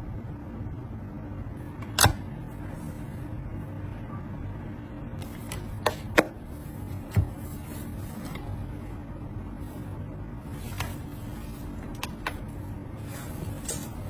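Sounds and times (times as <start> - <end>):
low rumbling background: 0.0 - 14.0.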